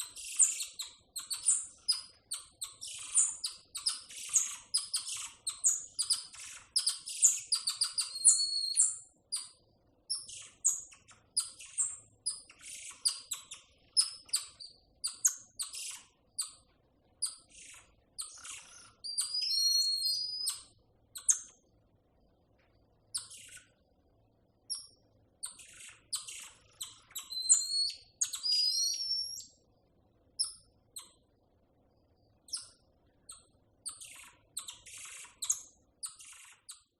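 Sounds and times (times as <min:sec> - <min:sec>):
monkey whistled calls: 0:00.0 - 0:16.0, 0:17.2 - 0:21.5, 0:25.6 - 0:29.6
monkeys chirping and twittering: 0:00.0 - 0:16.6, 0:17.2 - 0:21.6, 0:25.4 - 0:29.6, 0:32.5 - 0:36.9.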